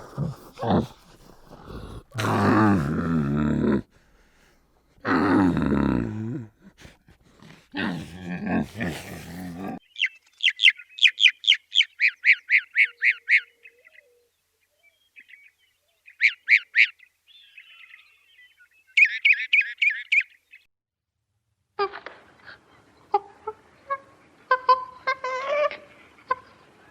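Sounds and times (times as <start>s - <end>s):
bird chirping: 9.8s - 20.7s.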